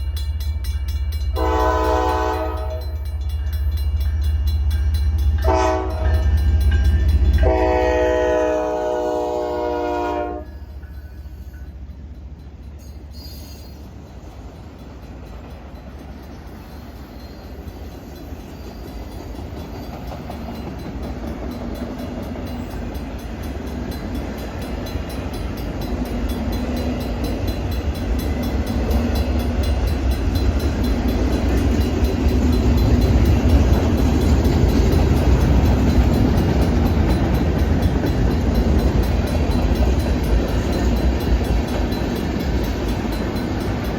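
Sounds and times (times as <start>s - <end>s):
freight train rumbling on rails: 0.0s - 43.9s
train horn blast: 1.4s - 3.0s, 5.4s - 6.3s, 7.4s - 10.7s.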